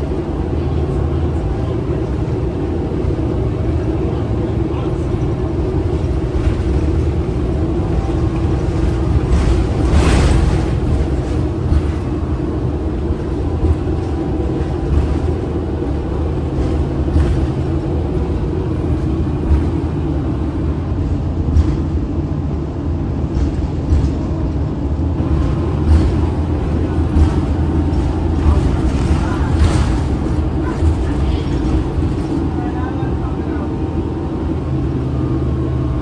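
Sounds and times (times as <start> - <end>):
bus interior rumble: 0.0 - 36.0.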